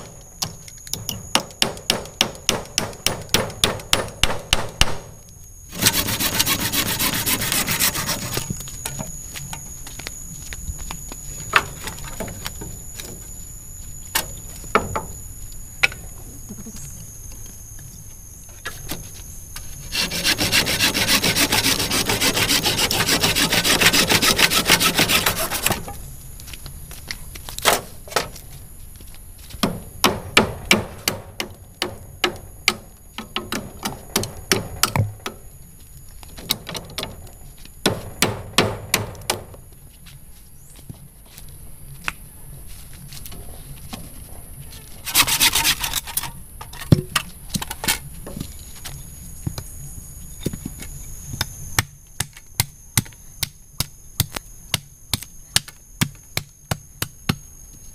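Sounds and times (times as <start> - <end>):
rasping strokes on wood: 5.7 - 8.5, 19.9 - 25.9, 45.0 - 45.9.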